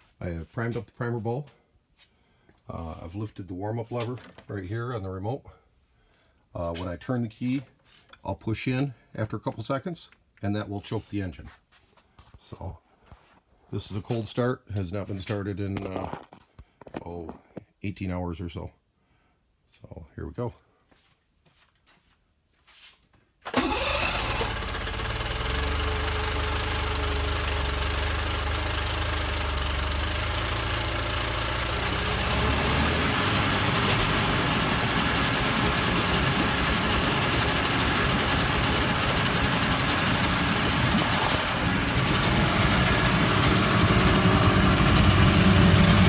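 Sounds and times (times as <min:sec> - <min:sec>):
outboard motor starting and idling: 0:23.5 - 0:46.0.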